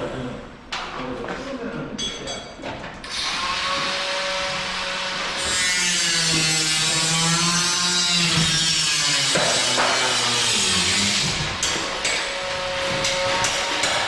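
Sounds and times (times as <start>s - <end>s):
power tool running: 3.1s - 14.0s.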